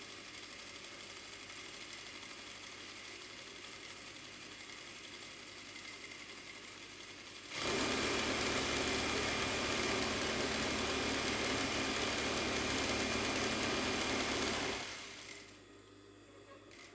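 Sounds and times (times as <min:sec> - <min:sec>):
sewing machine hum: 0:05.8 - 0:15.6.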